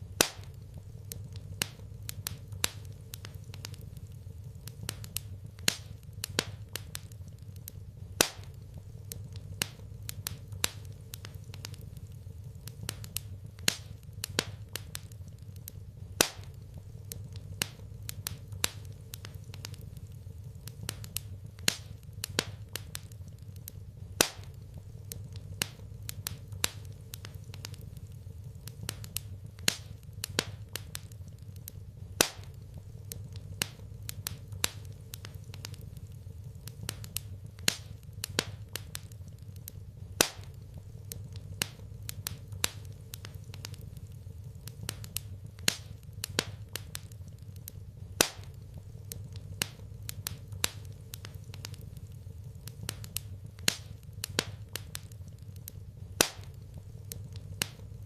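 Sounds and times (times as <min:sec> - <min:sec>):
steady low hum: 0:00.0 - 0:58.0
wood fire crackling: 0:00.0 - 0:58.0.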